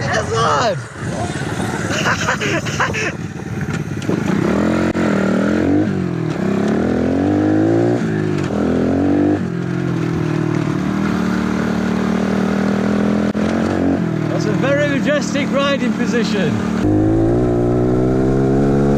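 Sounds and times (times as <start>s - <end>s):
motorbike engine revving: 3.8s - 9.8s, 16.6s - 18.9s.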